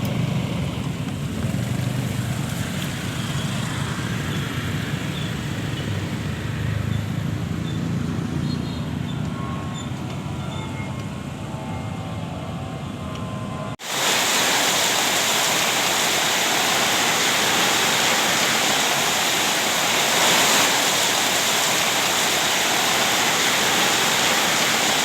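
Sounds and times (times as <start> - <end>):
rain pouring down: 0.0 - 6.7, 13.8 - 25.0.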